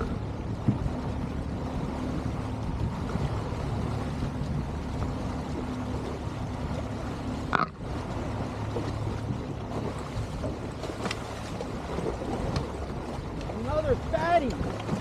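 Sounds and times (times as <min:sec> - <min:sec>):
outboard motor humming: 0:00.0 - 0:15.0
water noise: 0:00.0 - 0:15.0
wind: 0:00.0 - 0:15.0.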